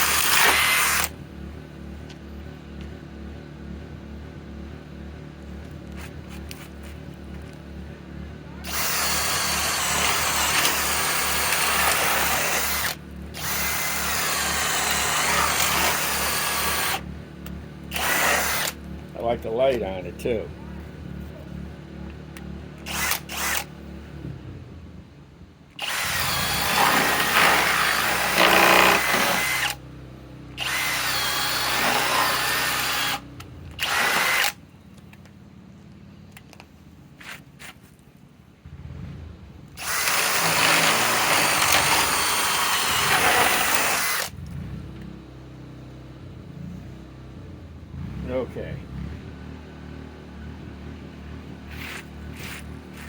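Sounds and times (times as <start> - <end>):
cordless drill boring into wood: 0.0 - 1.1, 8.6 - 17.0, 17.9 - 18.8, 22.8 - 23.7, 25.8 - 29.8, 30.6 - 34.6, 39.8 - 44.4.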